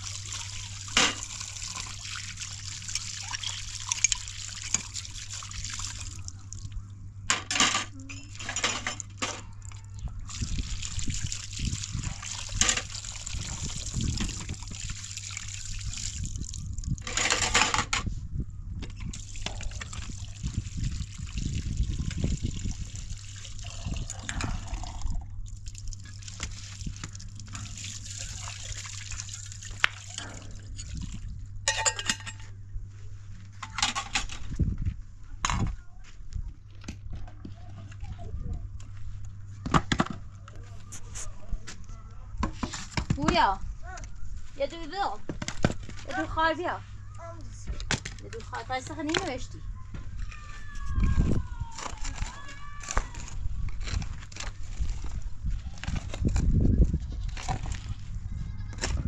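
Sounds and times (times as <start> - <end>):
water running and splashing: 0.0 - 6.8, 10.3 - 17.0, 19.1 - 31.3
steady low hum: 0.0 - 50.3.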